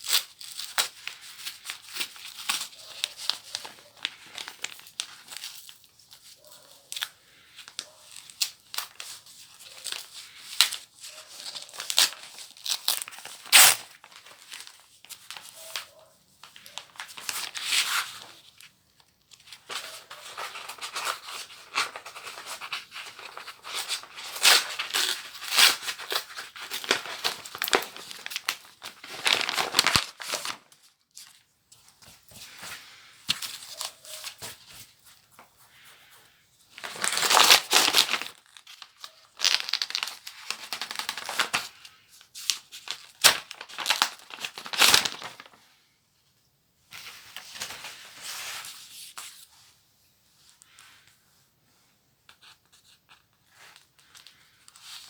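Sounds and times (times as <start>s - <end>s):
packaging tearing and crinkling: 7.7s - 15.8s, 19.7s - 30.8s, 36.8s - 41.8s, 42.5s - 45.6s.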